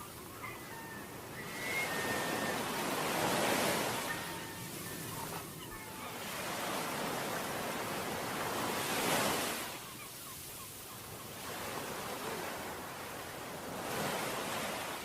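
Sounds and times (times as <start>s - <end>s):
waves washing onto beach: 0.0s - 15.0s.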